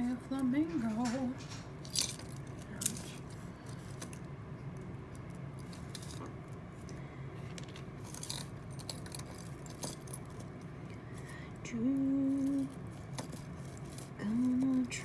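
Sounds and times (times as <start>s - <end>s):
jewelry clinking and jingling: 0.7s - 4.2s, 8.0s - 11.4s, 12.2s - 15.0s.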